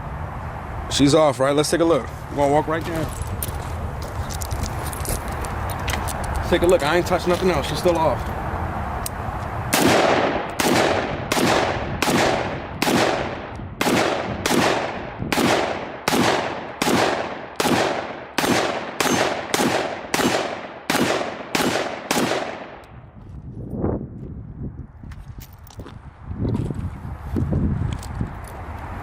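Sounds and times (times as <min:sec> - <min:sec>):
pistol shots with echo: 0:09.7 - 0:22.8.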